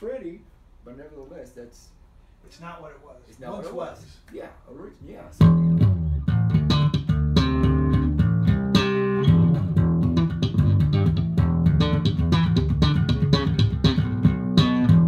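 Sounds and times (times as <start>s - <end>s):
slap bass guitar: 5.4s - 15.0s.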